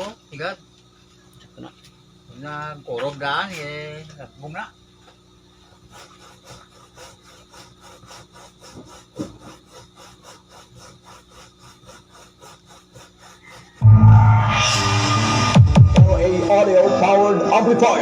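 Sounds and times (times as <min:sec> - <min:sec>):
rasping strokes: 0:05.7 - 0:15.6
bass-heavy music: 0:13.8 - 0:18.0
low hum: 0:13.8 - 0:18.0.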